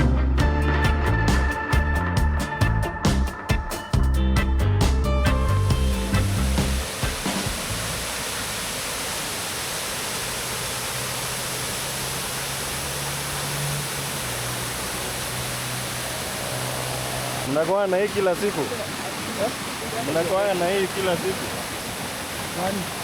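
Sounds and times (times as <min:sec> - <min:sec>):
music track: 0:00.0 - 0:08.0
waterfall rushing: 0:05.3 - 0:23.0.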